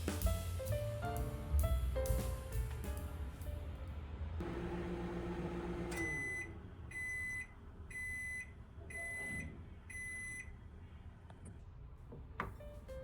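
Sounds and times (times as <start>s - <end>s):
appliance motor hum winding down: 4.4s - 6.6s.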